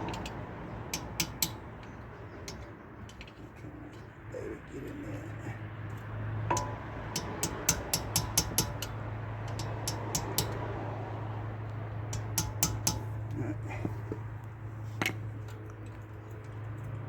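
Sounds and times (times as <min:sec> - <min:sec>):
sharp metal taps: 0:00.0 - 0:04.1, 0:05.9 - 0:10.9, 0:11.6 - 0:14.0.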